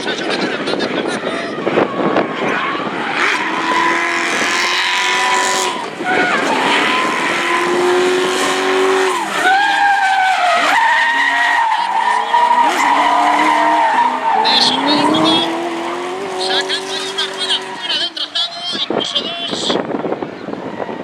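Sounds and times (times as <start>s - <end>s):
tyres squealing and skidding: 0.0s - 21.0s
car engine revving hard: 1.6s - 18.3s.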